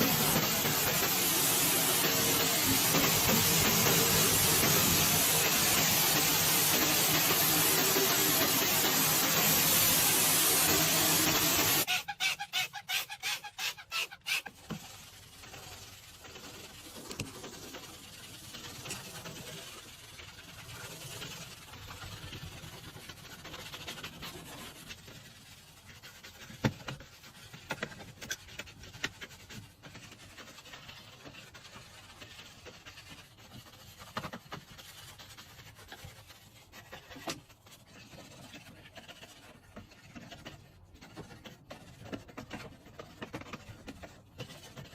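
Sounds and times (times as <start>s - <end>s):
short spray bursts: 0.0s - 11.9s
spraying hiss: 0.0s - 11.9s
scrubbing and wiping: 0.0s - 44.9s.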